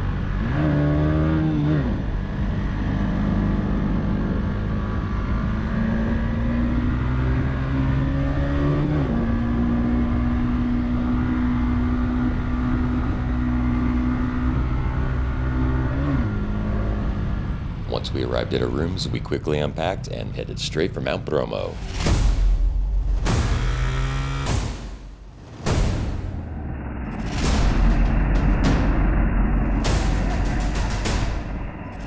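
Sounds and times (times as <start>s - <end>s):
motorcycle engine accelerating: 0.0s - 17.9s, 23.2s - 25.3s.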